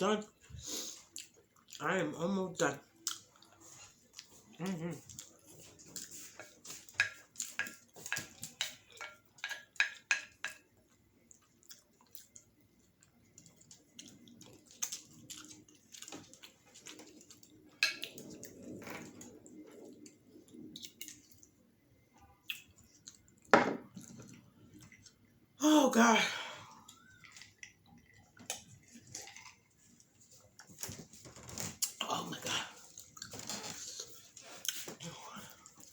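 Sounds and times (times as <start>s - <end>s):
wet chewing mouth sounds: 11.2s - 21.6s, 26.8s - 30.1s.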